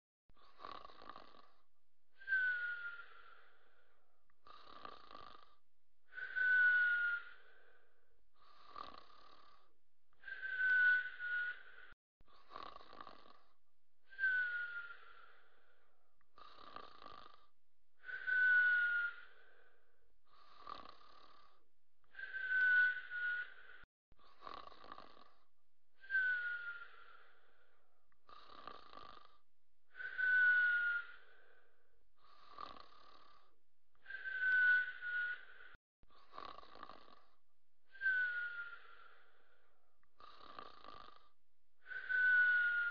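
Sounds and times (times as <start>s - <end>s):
soft raspy snoring: 0.3s - 42.9s
whistling breath: 1.0s - 4.8s, 6.0s - 12.0s, 14.0s - 16.7s, 18.0s - 23.9s, 26.0s - 28.6s, 29.2s - 35.8s, 37.9s - 42.9s.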